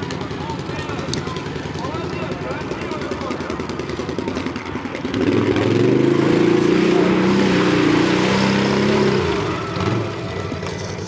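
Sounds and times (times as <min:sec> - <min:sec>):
atv engine revving high: 0:00.0 - 0:11.0.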